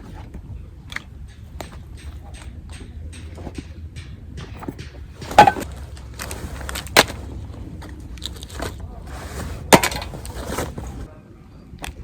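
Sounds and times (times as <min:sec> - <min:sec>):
low steady rumble: 0:00.0 - 0:11.2
rustling handling noise: 0:05.2 - 0:11.1.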